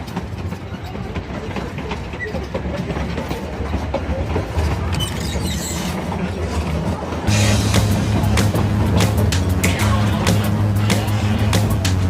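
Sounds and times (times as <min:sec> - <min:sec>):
wheels clacking over rail joints: 0:00.0 - 0:07.3
railroad car rumble: 0:00.0 - 0:12.0.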